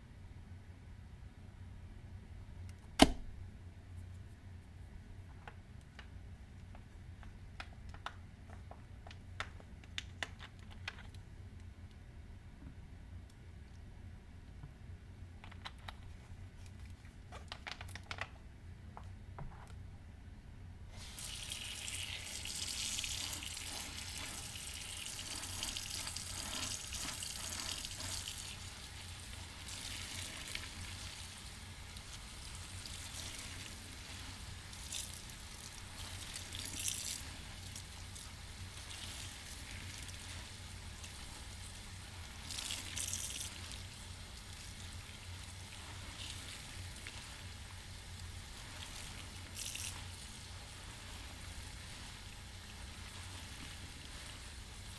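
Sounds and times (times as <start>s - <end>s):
gushes of squeezed-out water: 21.0s - 54.9s
sponge squeezed in running water: 21.0s - 54.9s.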